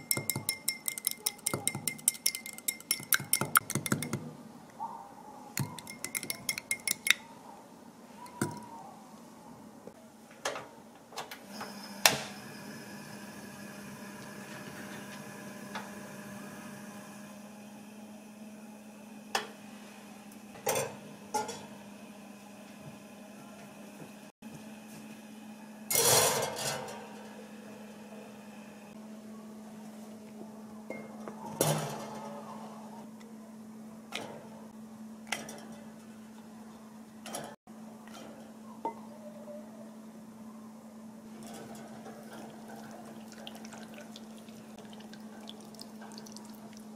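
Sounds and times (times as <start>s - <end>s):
dishes knocking and clinking: 0.0s - 4.3s, 5.6s - 7.2s, 8.3s - 8.7s
microwave oven humming: 11.2s - 46.9s.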